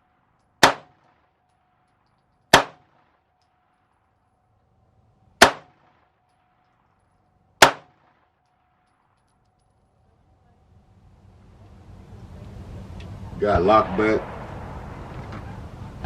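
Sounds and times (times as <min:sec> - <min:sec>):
pistol shots: 0:00.6 - 0:01.4, 0:02.5 - 0:03.2, 0:05.4 - 0:06.6, 0:07.6 - 0:08.8
faint steady tone: 0:03.2 - 0:16.0.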